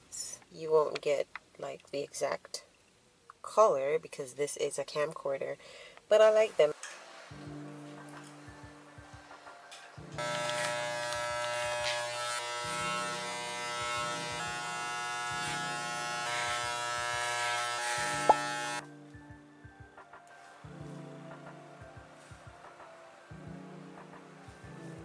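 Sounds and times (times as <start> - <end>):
faint background music: 0.0 - 25.0
small electric motor buzzing: 10.2 - 18.8.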